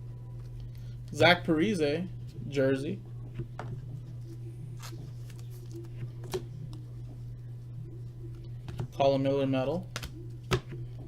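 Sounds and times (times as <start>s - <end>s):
steady low hum: 0.0s - 11.0s
cards being flipped through: 3.4s - 6.8s, 9.8s - 11.0s.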